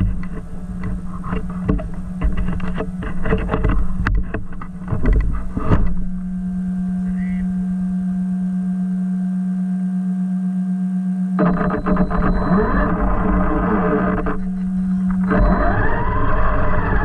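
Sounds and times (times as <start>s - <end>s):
rc truck motor hum: 11.4s - 17.0s.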